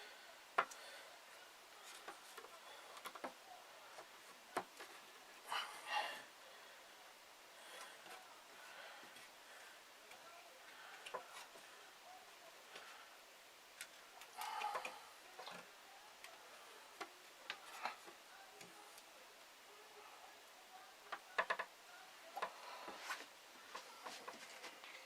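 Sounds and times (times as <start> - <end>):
wooden clicks and knocks: 21.1 - 21.7.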